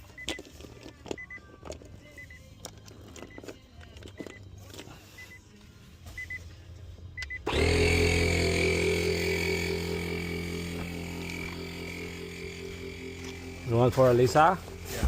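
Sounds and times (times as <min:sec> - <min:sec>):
short beeps from controls: 0:02.1 - 0:02.5, 0:05.2 - 0:05.5, 0:06.1 - 0:06.6, 0:07.2 - 0:07.5
electric air pump motor running: 0:07.4 - 0:15.0.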